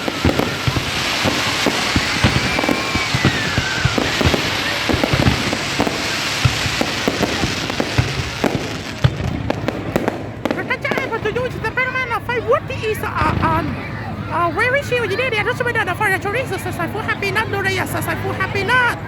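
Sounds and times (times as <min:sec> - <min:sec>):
faint firework whistle: 0:00.0 - 0:11.2
fireworks crackling and banging: 0:00.0 - 0:19.0.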